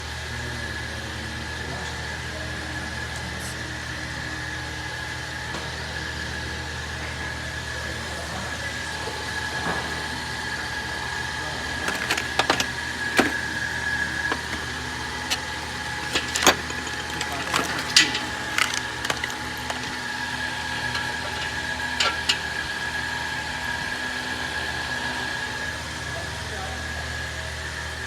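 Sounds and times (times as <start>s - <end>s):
engine idling: 11.0s - 25.3s.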